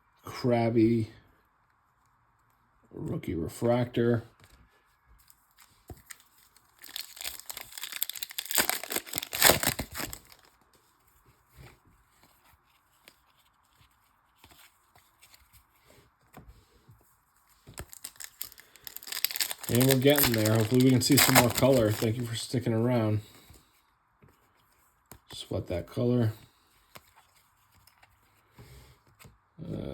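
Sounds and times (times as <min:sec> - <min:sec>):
cards rustling and clicking: 0:05.2 - 0:10.8, 0:11.5 - 0:16.6, 0:17.5 - 0:22.4, 0:26.8 - 0:29.4
wrapper being torn open: 0:06.0 - 0:10.5, 0:17.8 - 0:22.3.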